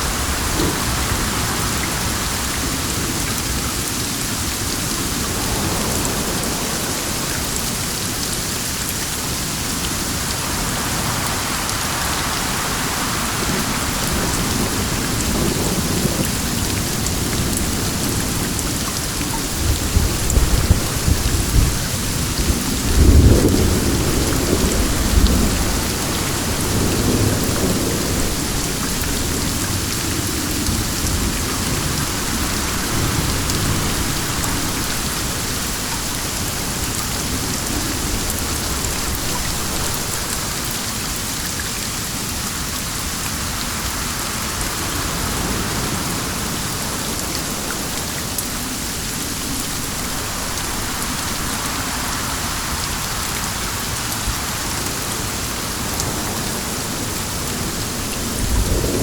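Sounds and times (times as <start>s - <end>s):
steady rain falling: 0.0s - 59.0s
thunder rumbling: 10.0s - 40.6s, 55.8s - 59.0s.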